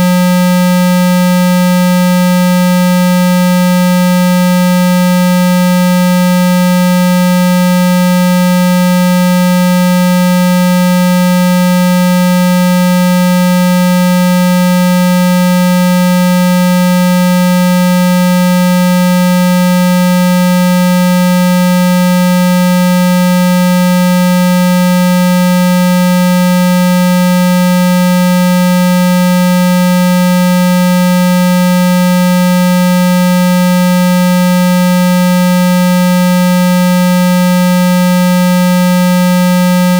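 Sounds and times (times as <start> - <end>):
low buzzy electronic test tone: 0.0 - 8.6.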